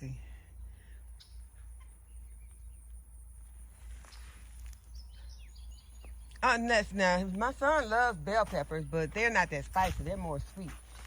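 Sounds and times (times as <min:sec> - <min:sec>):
faint bird calls: 0:00.1 - 0:06.4.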